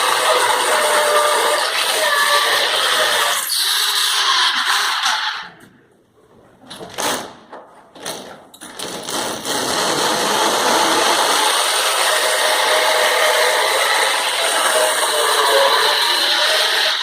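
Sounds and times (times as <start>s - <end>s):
electric drill boring through tile: 0.0s - 5.3s, 8.8s - 17.0s.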